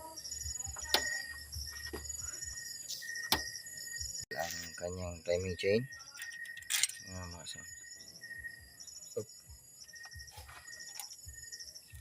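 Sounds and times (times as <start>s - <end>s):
crickets chirping: 0.0s - 12.0s
steady high insect tone: 0.0s - 12.0s.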